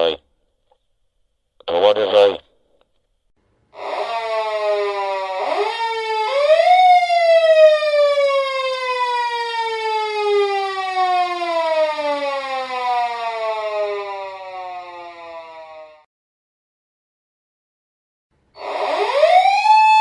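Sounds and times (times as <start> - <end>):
police car siren wailing: 3.8 - 16.1, 18.6 - 20.0.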